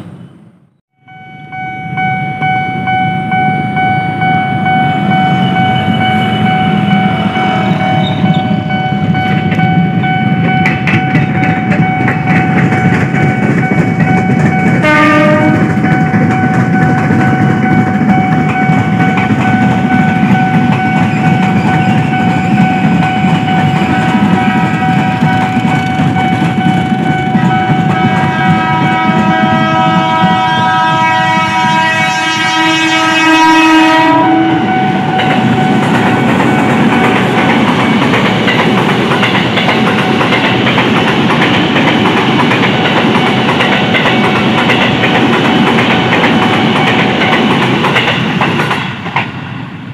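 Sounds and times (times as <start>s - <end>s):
train wheels clacking: 5.4s - 31.9s, 32.5s - 49.5s
train horn: 14.0s - 16.4s, 17.3s - 35.8s.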